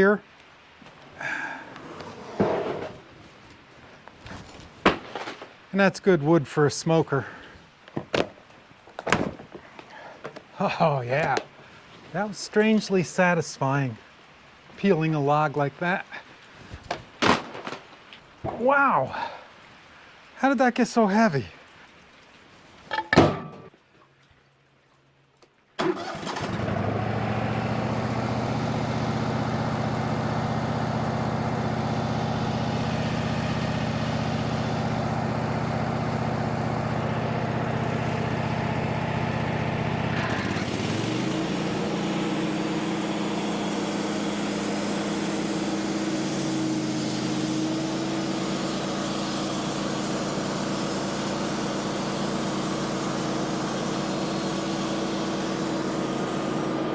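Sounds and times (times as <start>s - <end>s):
sawmill engine running: 1.2s - 3.1s, 25.8s - 56.9s
thump: 4.8s - 5.4s, 9.0s - 9.5s, 16.9s - 17.8s.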